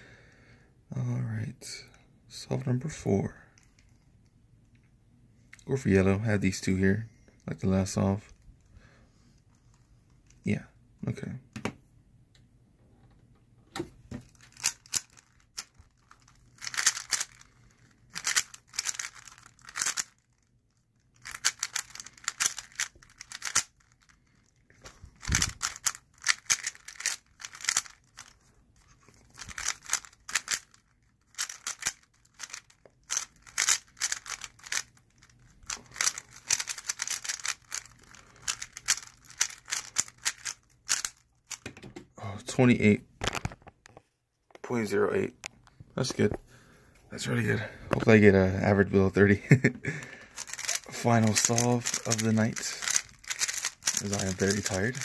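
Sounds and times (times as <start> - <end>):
puzzle cube clicking: 14.4 - 20.1, 21.2 - 24.0, 25.2 - 41.6, 50.4 - 55.0.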